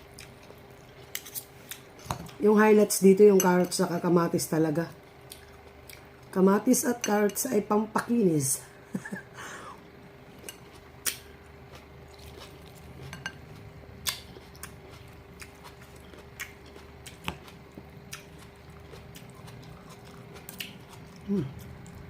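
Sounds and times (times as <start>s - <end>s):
chewing: 10.4s - 22.0s.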